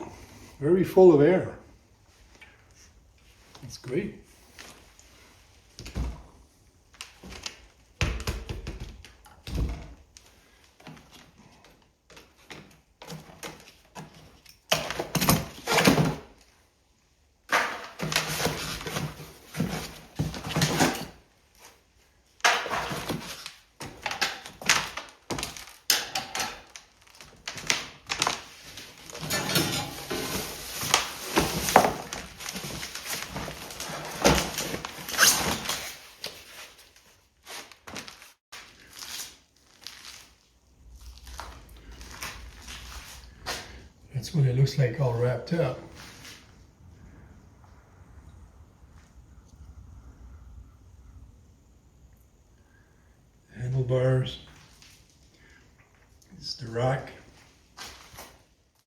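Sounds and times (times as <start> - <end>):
packaging rustling and crinkling: 22.6 - 43.8
knocks of parts moved: 27.5 - 36.5.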